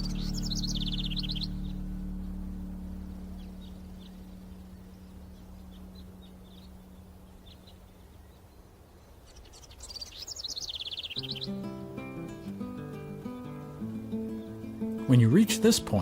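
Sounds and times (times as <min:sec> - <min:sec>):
low held musical note: 0:00.0 - 0:07.4
small birds chirping: 0:00.0 - 0:16.0.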